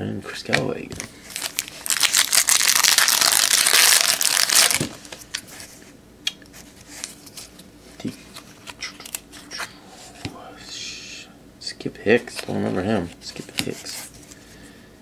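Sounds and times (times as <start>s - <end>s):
plastic wrapper crinkling: 1.0s - 5.4s.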